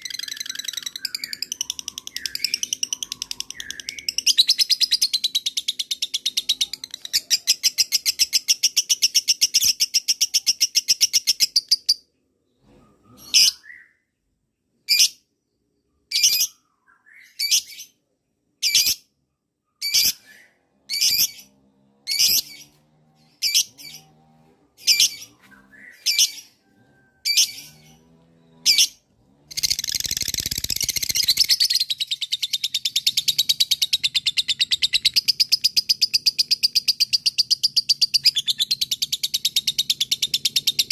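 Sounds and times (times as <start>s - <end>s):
lovebird sharp chirps: 19.8s - 21.5s, 28.6s - 40.9s.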